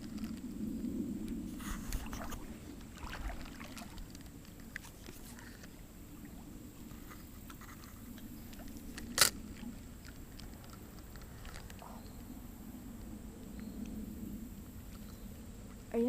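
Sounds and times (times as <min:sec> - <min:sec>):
rushing river water: 0:01.6 - 0:06.5.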